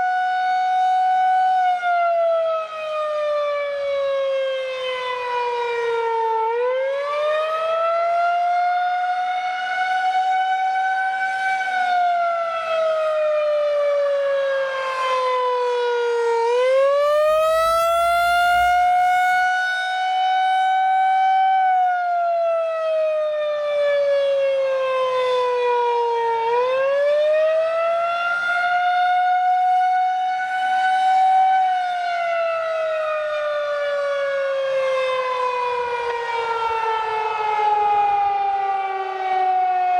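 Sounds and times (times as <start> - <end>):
warning siren wailing: 15.5 - 21.6, 33.0 - 39.9.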